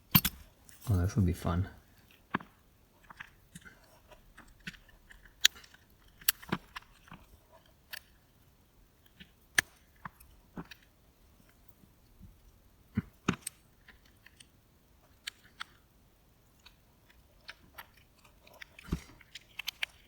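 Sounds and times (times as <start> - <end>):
plastic parts clicking: 2.3 - 7.3, 16.6 - 20.0.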